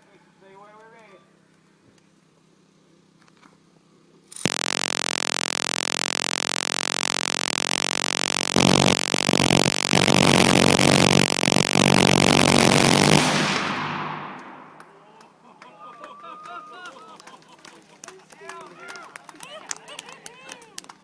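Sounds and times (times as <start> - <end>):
minigun firing burst: 4.4 - 14.8
gunfire echo: 13.2 - 14.9.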